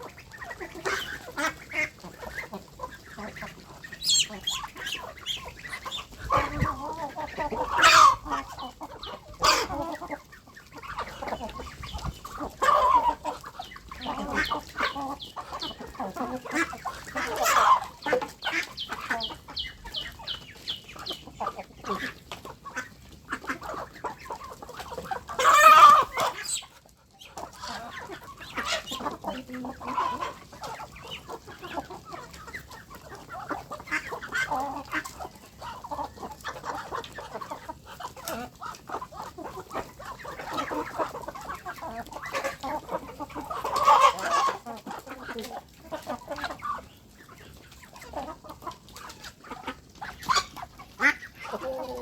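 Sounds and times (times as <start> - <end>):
chickens clucking: 0.0 - 52.0.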